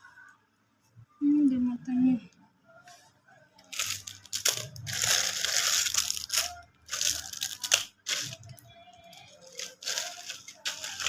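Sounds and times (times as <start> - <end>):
plastic packaging tearing: 3.7 - 8.6, 9.2 - 11.0.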